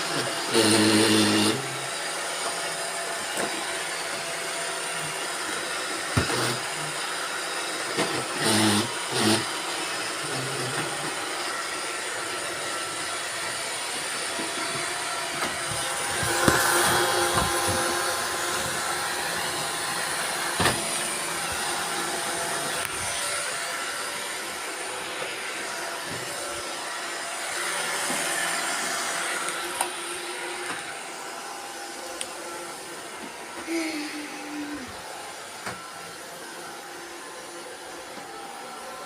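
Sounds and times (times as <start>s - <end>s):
robot vacuums suction hiss: 0.0s - 2.0s, 8.1s - 12.0s
motor whines: 0.0s - 38.8s.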